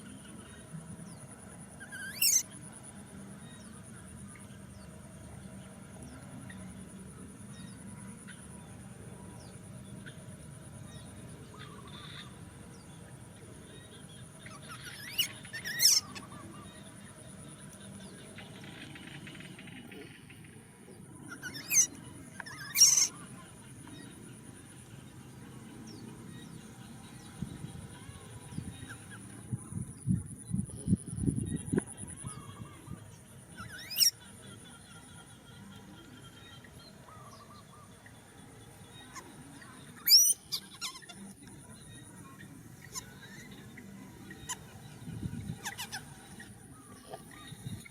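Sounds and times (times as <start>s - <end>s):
baby monkey squealing: 1.8s - 2.5s, 14.6s - 16.3s, 21.3s - 23.2s, 33.6s - 34.2s, 40.0s - 41.3s, 45.4s - 46.1s
high-pitched animal calls: 1.8s - 2.5s, 14.5s - 16.5s, 21.2s - 23.3s, 33.6s - 34.2s, 39.0s - 41.4s, 44.3s - 47.5s
faint chirps and clicks: 17.4s - 20.6s, 21.3s - 24.4s.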